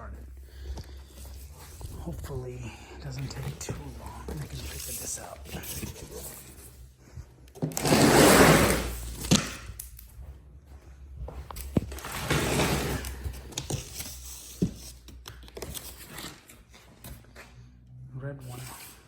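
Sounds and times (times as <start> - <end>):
cardboard scraping and tearing: 7.6 - 9.7, 11.9 - 16.7.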